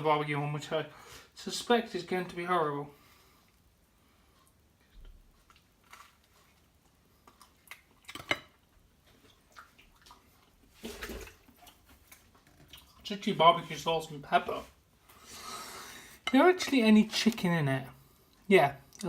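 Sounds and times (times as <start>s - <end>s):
chewing mouth sounds: 4.4s - 8.3s.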